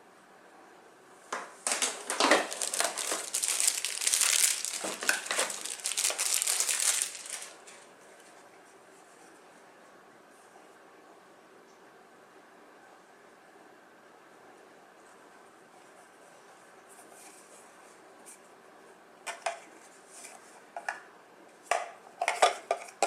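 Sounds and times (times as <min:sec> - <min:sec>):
packaging crinkling and rustling: 0:01.6 - 0:07.9.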